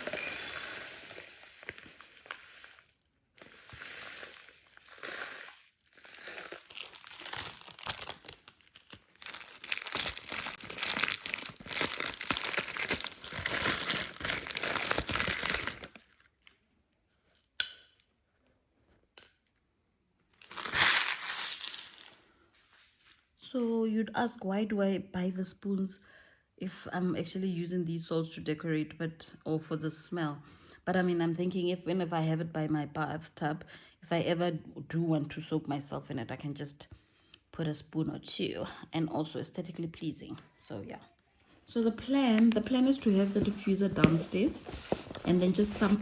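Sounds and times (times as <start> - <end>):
bath salts pouring into container: 0.0 - 7.8, 20.6 - 22.2, 42.4 - 46.0
plastic packet crinkling: 5.8 - 16.3, 20.4 - 22.2.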